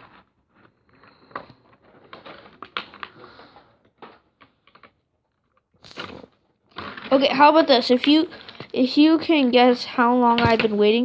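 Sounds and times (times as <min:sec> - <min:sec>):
plastic packaging crinkling: 0:00.0 - 0:07.2.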